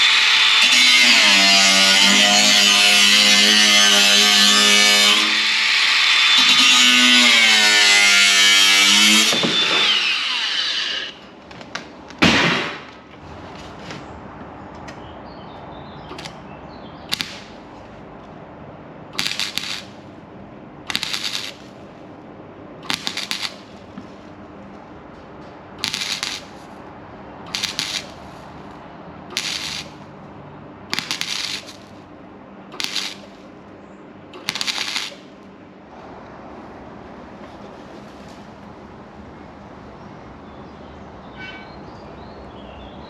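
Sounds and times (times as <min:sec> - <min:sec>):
crackling welding arc: 0:00.0 - 0:11.7, 0:16.1 - 0:16.4, 0:17.1 - 0:17.7, 0:19.1 - 0:20.0, 0:20.9 - 0:21.8, 0:22.8 - 0:24.2, 0:25.8 - 0:26.8, 0:27.5 - 0:30.1, 0:30.9 - 0:32.0, 0:32.7 - 0:33.5, 0:34.4 - 0:35.4
steady hum: 0:16.2 - 0:37.9.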